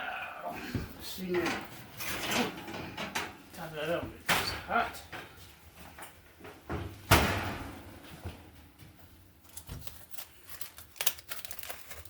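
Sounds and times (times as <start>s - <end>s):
oven door shutting: 1.4s - 3.4s.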